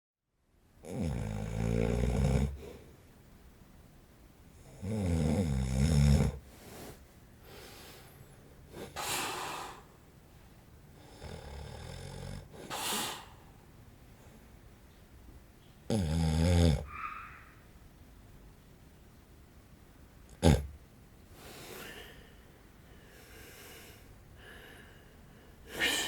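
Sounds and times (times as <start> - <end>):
man snoring: 0.8 - 2.7, 4.6 - 6.4, 11.0 - 13.3, 15.9 - 16.9, 20.4 - 20.7
noisy breaths: 2.5 - 3.1, 6.4 - 11.5, 12.4 - 14.5, 21.3 - 26.0.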